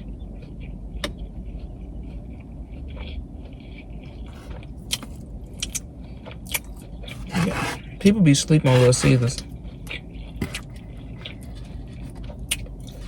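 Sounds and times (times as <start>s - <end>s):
low steady hum: 0.0s - 13.0s
person chewing food: 0.0s - 13.0s
mouth clicks and smacks: 4.1s - 6.8s.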